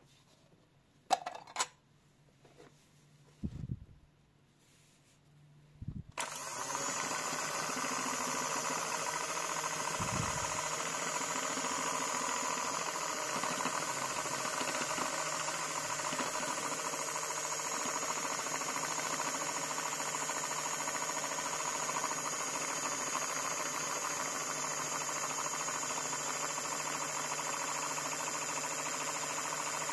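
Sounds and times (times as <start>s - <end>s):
motor-driven machine humming and whining: 6.2s - 29.9s.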